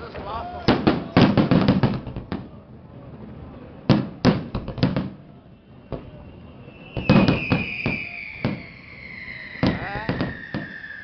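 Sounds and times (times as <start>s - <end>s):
fireworks bangs and crackles: 0.0s - 11.0s
firework whistle falling in pitch: 5.3s - 11.0s.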